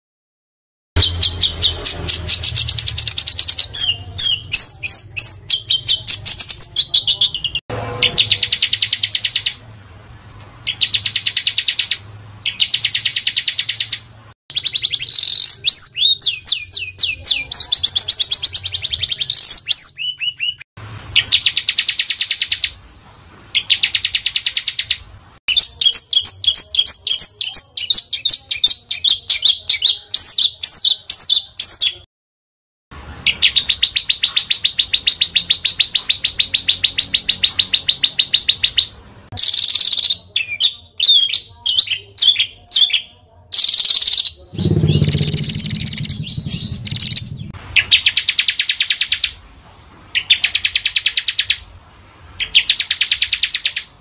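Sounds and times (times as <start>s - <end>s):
songbirds trilling and chirping: 1.0s - 9.6s, 10.6s - 22.8s, 23.5s - 32.0s, 33.2s - 49.4s.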